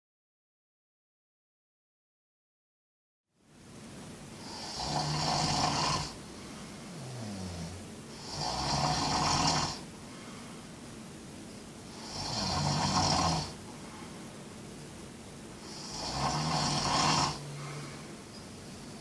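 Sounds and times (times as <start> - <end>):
person snoring: 4.4 - 6.2, 6.9 - 9.9, 11.9 - 13.8, 15.6 - 18.1
quiet breath: 5.6 - 10.9, 13.5 - 14.5, 16.9 - 19.0.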